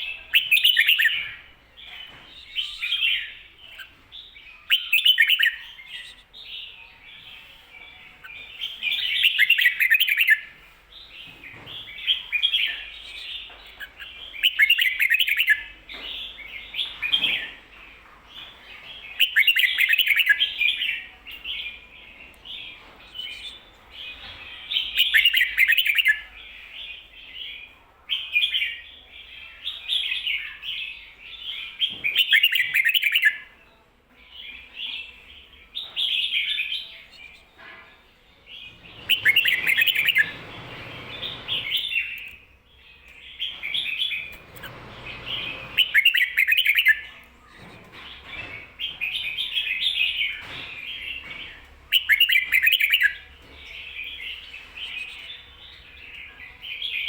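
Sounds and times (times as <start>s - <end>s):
bulbul warbled song: 0.0s - 7.6s, 11.2s - 17.6s, 18.4s - 27.5s, 38.5s - 47.3s, 48.0s - 57.0s
soft bird chatter: 0.0s - 57.0s.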